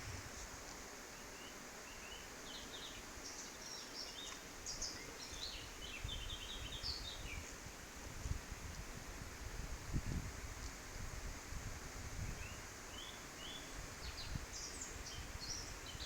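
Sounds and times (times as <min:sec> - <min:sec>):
wind rumbling on microphone: 0:00.0 - 0:00.6, 0:05.8 - 0:12.8
outdoor hiss: 0:00.0 - 0:16.0.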